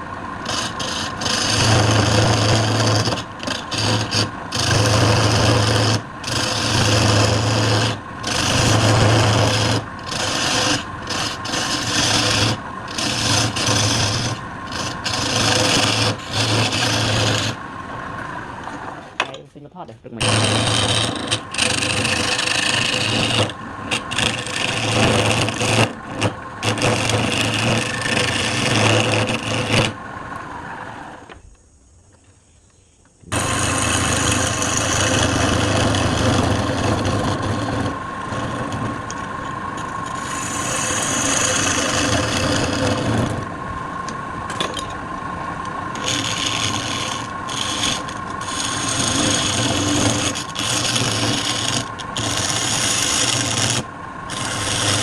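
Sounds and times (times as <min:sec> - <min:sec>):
lathe motor hum: 0:00.0 - 0:19.2, 0:20.2 - 0:31.4, 0:33.3 - 0:55.0
turning tool cutting spinning wood: 0:00.0 - 0:19.3, 0:20.1 - 0:31.4, 0:33.3 - 0:55.0.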